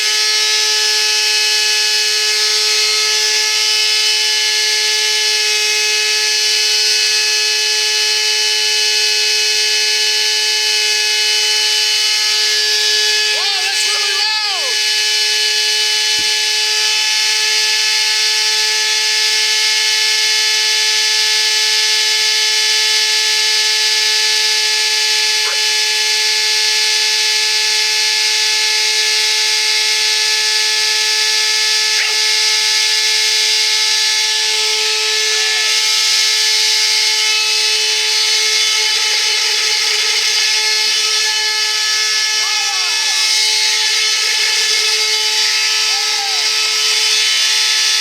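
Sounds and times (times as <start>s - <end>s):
vacuum cleaner high-pitched whine: 0.0s - 48.0s.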